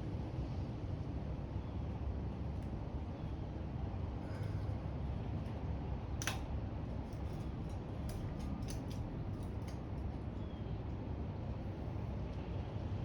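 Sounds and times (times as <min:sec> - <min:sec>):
tools clicking on metal parts: 0:06.2 - 0:06.5, 0:07.1 - 0:09.8.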